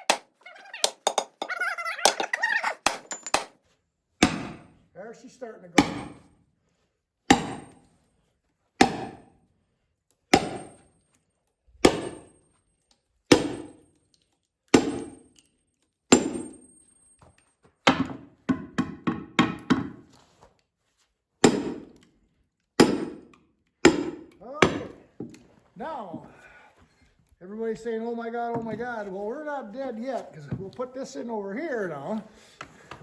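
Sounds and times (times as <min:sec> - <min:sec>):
maul striking steel wedge: 0:04.2 - 0:04.7, 0:05.8 - 0:06.2, 0:07.3 - 0:07.8, 0:08.8 - 0:09.3, 0:10.3 - 0:10.8, 0:11.8 - 0:12.4, 0:13.3 - 0:13.8, 0:14.7 - 0:15.3, 0:16.1 - 0:16.7, 0:21.4 - 0:22.0, 0:22.8 - 0:25.1.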